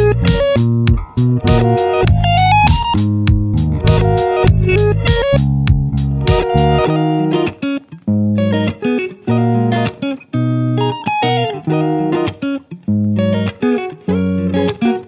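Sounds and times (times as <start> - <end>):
plucked guitar music: 0.0 - 15.0.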